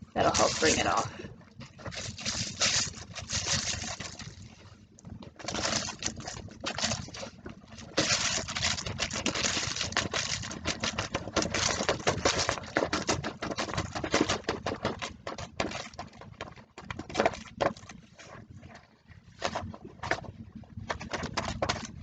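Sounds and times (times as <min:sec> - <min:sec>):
salt grains pattering on paper: 0:00.2 - 0:01.1, 0:01.8 - 0:04.4, 0:05.4 - 0:15.6
tapping on paper: 0:08.0 - 0:17.8, 0:20.9 - 0:22.0.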